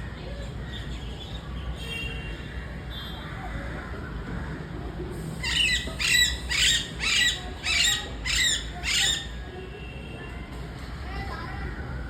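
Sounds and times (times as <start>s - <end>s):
parrot squawking: 5.4s - 9.4s.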